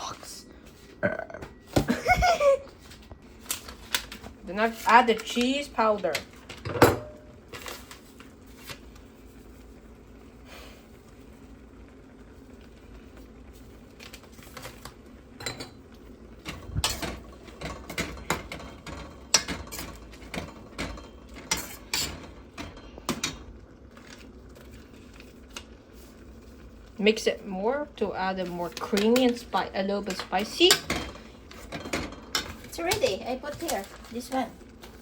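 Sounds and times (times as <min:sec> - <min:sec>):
spoon stirring in a pot: 0:13.1 - 0:26.9, 0:27.9 - 0:35.0.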